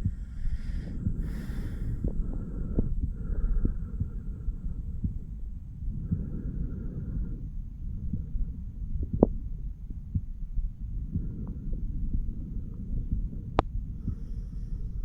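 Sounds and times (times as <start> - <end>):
heartbeat through a stethoscope: 0.0 - 15.0.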